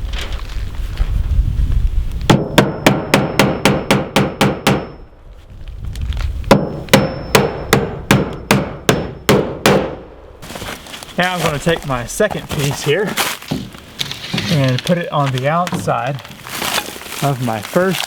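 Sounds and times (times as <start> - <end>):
hammer driving nails: 2.3 - 5.0, 6.5 - 10.0.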